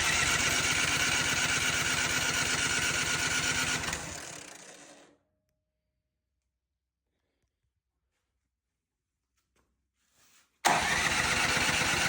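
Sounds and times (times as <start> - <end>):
snowblower engine cranking: 0.0 - 5.2, 10.6 - 12.0.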